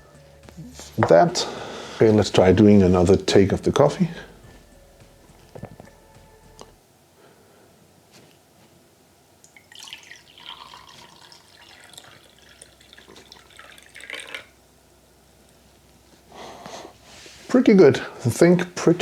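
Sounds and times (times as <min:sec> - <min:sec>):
liquid pouring into a cup: 0:09.4 - 0:14.6.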